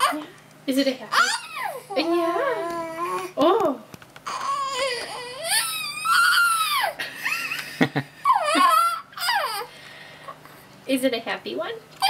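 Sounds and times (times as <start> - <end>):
baby squealing and cooing: 0.0 - 0.3, 1.1 - 3.4, 4.2 - 7.0, 8.2 - 9.7.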